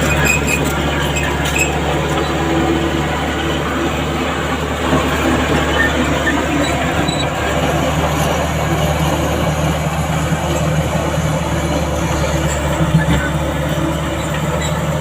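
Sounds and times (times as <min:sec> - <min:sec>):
heavy diesel machinery running: 0:00.0 - 0:15.0.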